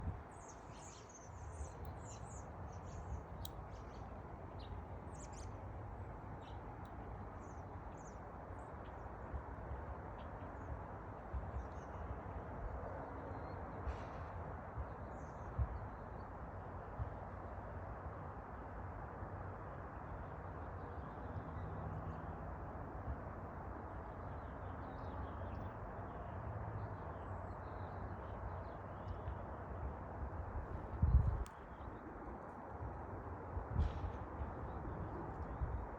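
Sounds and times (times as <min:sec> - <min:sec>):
small birds chirping: 0:00.3 - 0:08.2.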